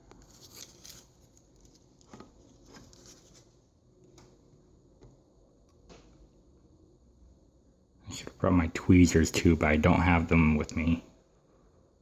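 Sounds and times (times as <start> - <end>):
low background hiss: 3.8 - 12.0.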